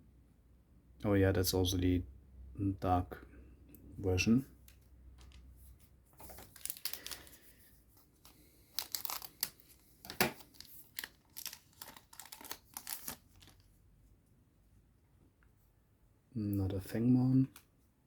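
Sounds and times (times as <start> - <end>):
wrapper tearing and crinkling: 6.2 - 7.5, 8.6 - 13.7.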